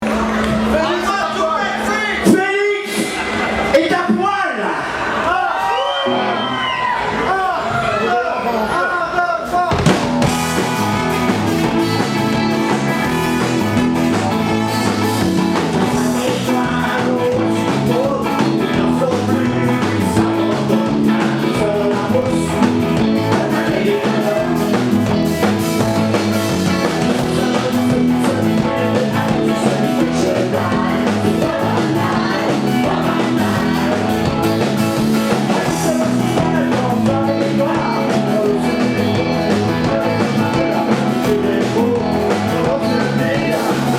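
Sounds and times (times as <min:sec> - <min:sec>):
ska-punk band playing: 0:00.0 - 0:43.9
person singing: 0:14.1 - 0:25.6, 0:26.6 - 0:43.9.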